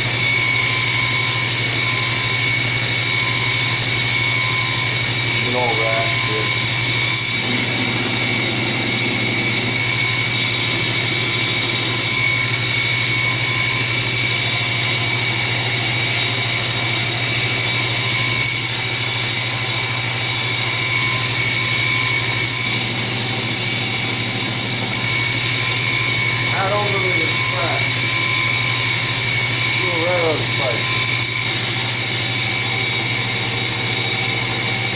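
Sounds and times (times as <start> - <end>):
shop machinery droning: 0.0 - 34.9.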